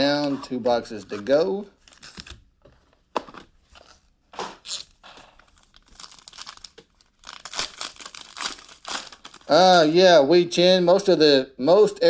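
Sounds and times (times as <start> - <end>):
packaging tearing and crinkling: 3.9 - 9.5.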